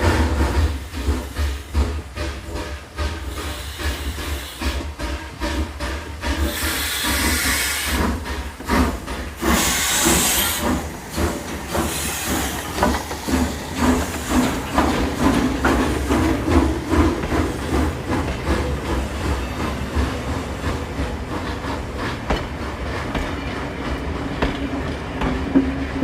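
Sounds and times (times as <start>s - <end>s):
steam hissing: 0.0s - 25.4s
steam locomotive chuffing: 0.0s - 26.0s.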